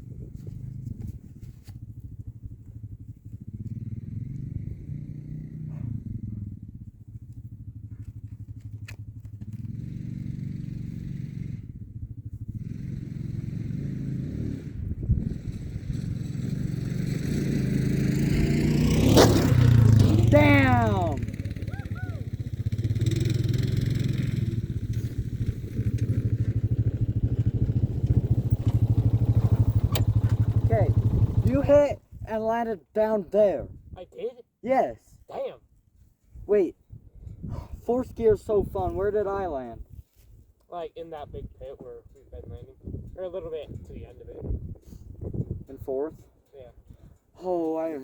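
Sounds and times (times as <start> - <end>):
off-road vehicle engine running: 0.0 - 32.6
engine idling: 19.9 - 31.8.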